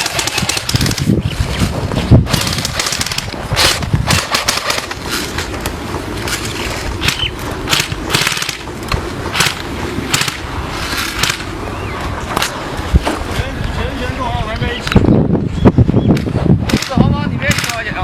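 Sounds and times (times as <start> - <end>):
air guns firing pops: 0.0 - 1.2, 2.3 - 5.5, 7.0 - 11.5, 16.1 - 17.9
steady low rumble: 0.0 - 18.0.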